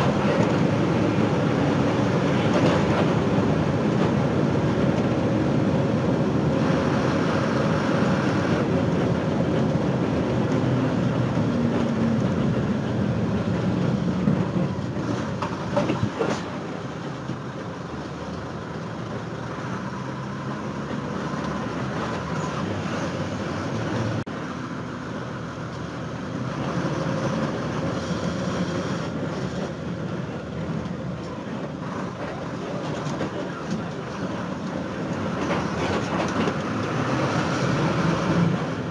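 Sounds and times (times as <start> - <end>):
bus engine and road rumble: 0.0 - 38.9.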